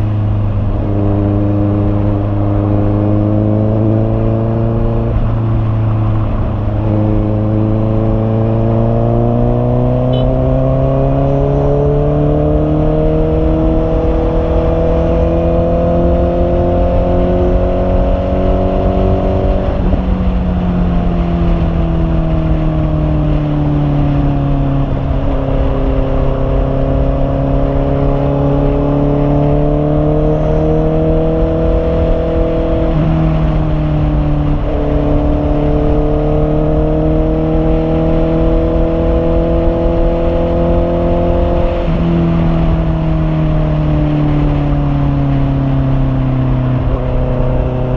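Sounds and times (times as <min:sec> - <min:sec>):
motorcycle engine running: 0:00.0 - 0:10.7.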